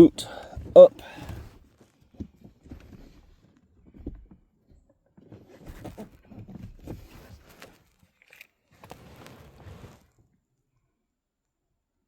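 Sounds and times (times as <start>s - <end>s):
light rustles and small knocks: 1.8s - 10.0s.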